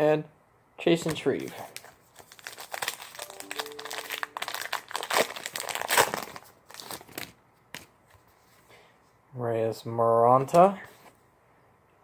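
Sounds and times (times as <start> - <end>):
wrapper crinkling: 1.4 - 7.9.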